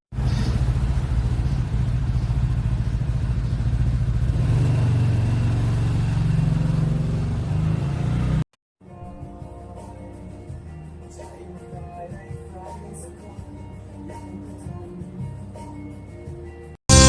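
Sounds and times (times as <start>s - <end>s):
engine running: 0.1s - 8.4s.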